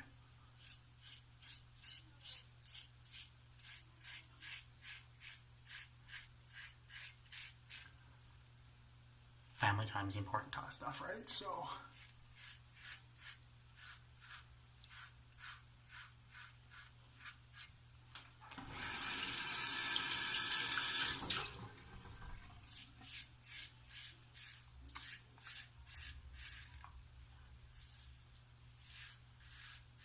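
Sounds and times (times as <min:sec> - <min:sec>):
razor scraping stubble: 0:00.6 - 0:07.9, 0:11.9 - 0:17.7, 0:22.7 - 0:26.9, 0:27.7 - 0:28.2, 0:28.8 - 0:30.0
sink tap running: 0:18.4 - 0:22.5.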